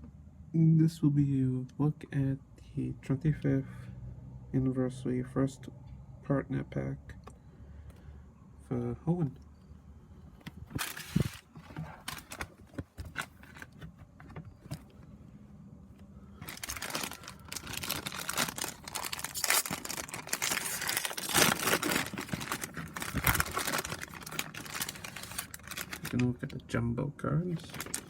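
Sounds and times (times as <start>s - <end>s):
packaging clicks and rustles: 10.5s - 15.1s, 16.4s - 26.6s, 27.5s - 28.0s
packaging crinkling and tearing: 10.7s - 13.9s, 16.4s - 26.5s, 27.5s - 28.0s.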